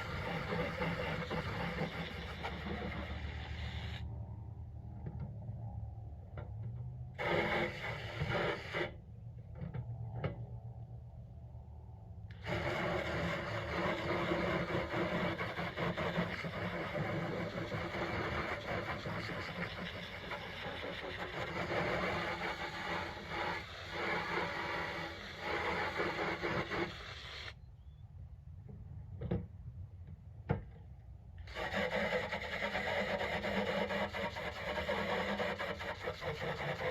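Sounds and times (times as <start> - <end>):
hose spraying water on metal: 0.0 - 4.0, 7.2 - 8.9, 12.4 - 27.5, 31.5 - 36.9
low engine hum: 0.0 - 8.3.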